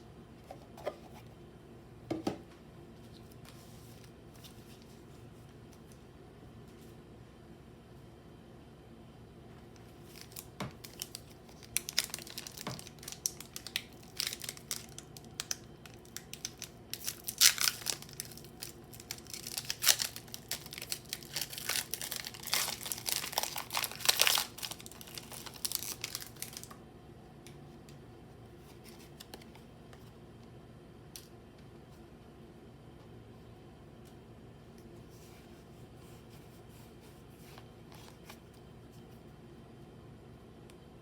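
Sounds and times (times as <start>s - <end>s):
plastic packaging crinkling and tearing: 9.9s - 26.8s.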